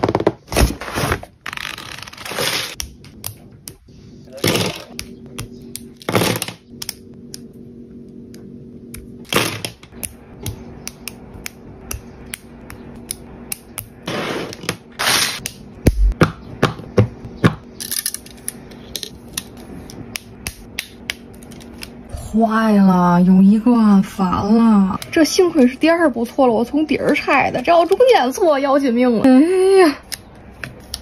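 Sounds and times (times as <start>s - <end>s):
steady low hum: 2.3s - 31.0s.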